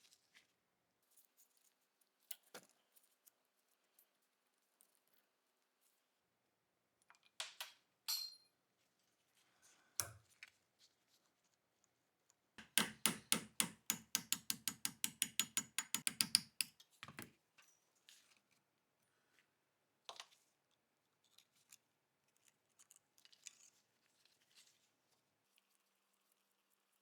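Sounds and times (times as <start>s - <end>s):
sharp mechanical clicks: 12.6s - 16.7s
knock: 12.6s - 17.3s.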